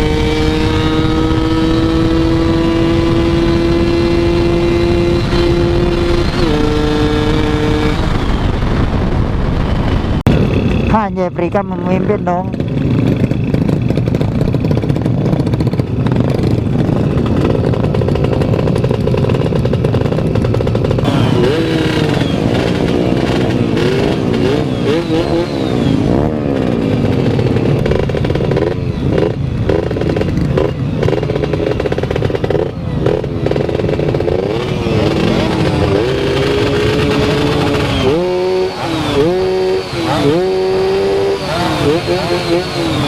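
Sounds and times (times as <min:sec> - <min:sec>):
two-stroke motorcycle engine revving: 0:00.0 - 0:09.2, 0:09.8 - 0:43.0.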